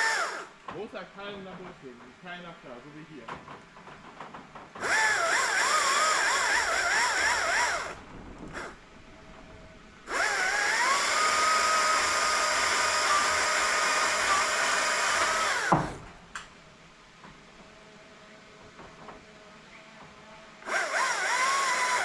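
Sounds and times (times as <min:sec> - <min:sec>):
chainsaw cutting tree trunk: 0:00.0 - 0:00.5, 0:04.8 - 0:08.8, 0:10.1 - 0:16.1, 0:20.6 - 0:22.0.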